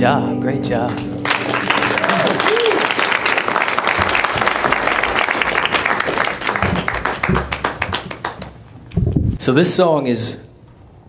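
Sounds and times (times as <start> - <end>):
crowd applauding: 0.9 - 8.8.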